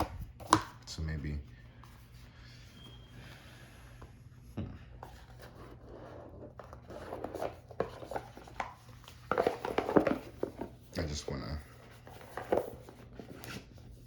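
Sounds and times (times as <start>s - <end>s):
cards tapping and rubbing: 0.0s - 0.8s, 5.0s - 13.9s.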